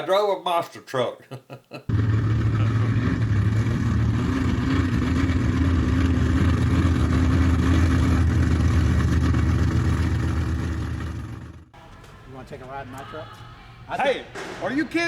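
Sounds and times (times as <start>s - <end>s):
truck engine low drone: 1.9s - 12.3s.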